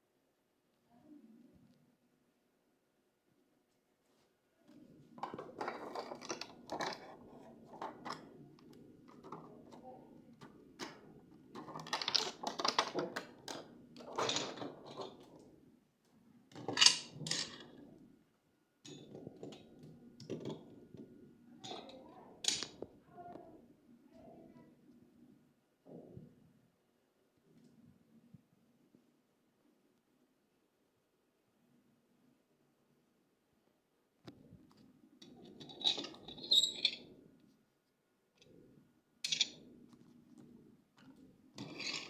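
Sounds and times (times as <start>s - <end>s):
plastic items clicking: 5.2s - 8.3s, 10.4s - 15.2s.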